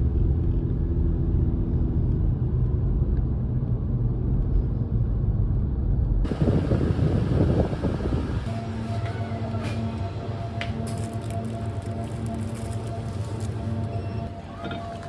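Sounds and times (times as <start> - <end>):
vehicle engine and road noise: 0.0 - 15.0.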